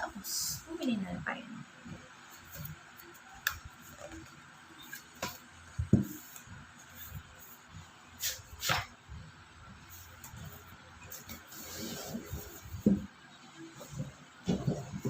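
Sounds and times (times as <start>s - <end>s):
scraping or rustling packaging: 10.1s - 12.8s.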